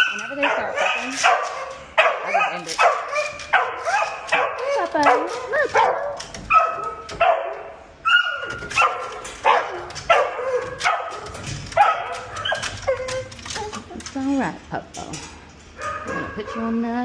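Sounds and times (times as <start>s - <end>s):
dog barking: 0.0s - 11.2s, 11.8s - 12.6s, 15.8s - 16.9s.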